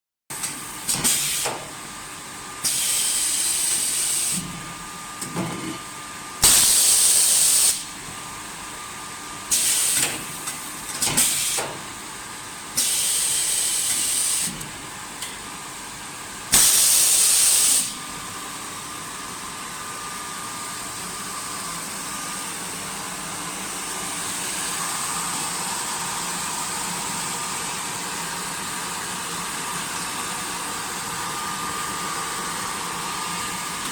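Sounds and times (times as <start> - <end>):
machine hissing bursts: 2.6 - 4.4, 6.4 - 7.9, 9.5 - 10.2, 12.8 - 14.6, 16.5 - 18.0.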